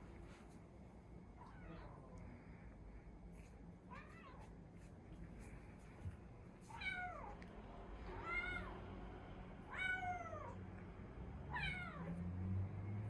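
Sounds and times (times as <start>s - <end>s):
kitten meowing: 11.5s - 12.1s.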